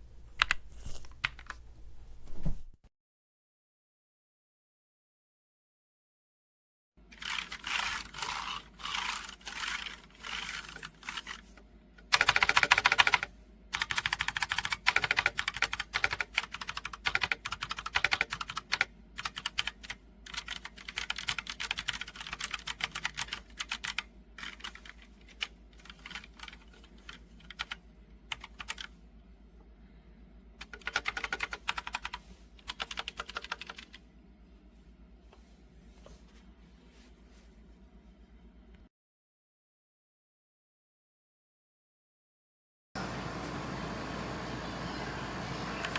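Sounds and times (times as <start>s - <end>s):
mechanical keyboard typing: 7.2s - 28.9s, 30.6s - 34.0s.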